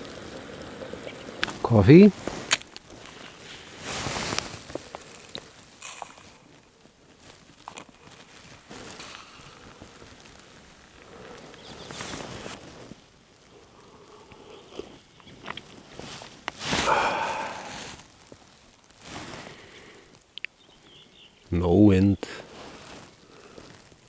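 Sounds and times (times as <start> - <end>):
soft rustling swishes: 1.5 - 5.2, 15.6 - 19.5.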